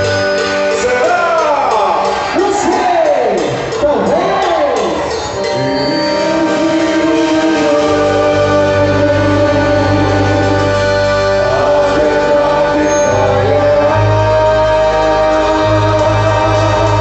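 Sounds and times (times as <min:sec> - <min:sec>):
held chords: 0:00.0 - 0:17.0
strong bass: 0:00.0 - 0:17.0
person singing: 0:04.1 - 0:17.0.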